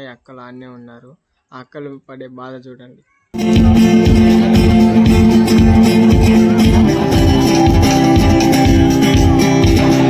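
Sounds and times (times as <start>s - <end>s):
music with steady beat: 3.4s - 10.0s
strummed guitar: 3.4s - 10.0s.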